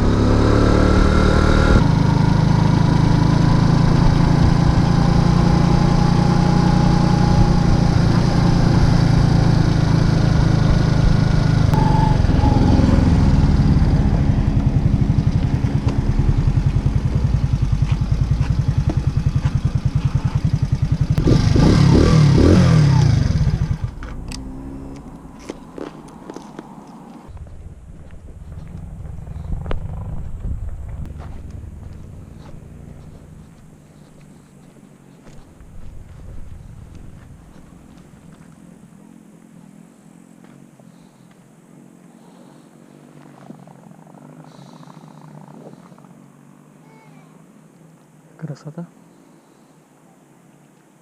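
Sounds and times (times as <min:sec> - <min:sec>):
moped engine running: 0:00.0 - 0:26.4, 0:27.3 - 0:34.4.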